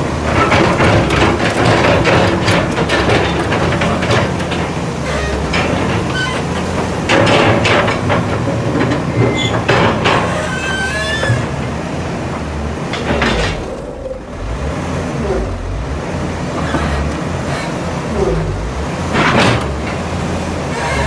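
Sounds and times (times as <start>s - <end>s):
excavator diesel engine running: 0.0s - 21.0s
metallic clanking and rattling: 0.0s - 21.0s
short high squeaks: 10.3s - 11.5s, 20.7s - 21.0s.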